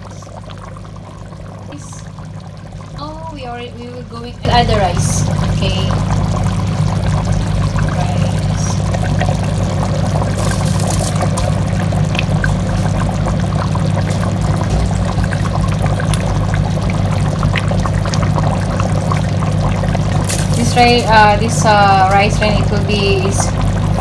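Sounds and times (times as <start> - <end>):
low burner noise: 0.0 - 24.0
pot boiling and bubbling: 0.0 - 24.0.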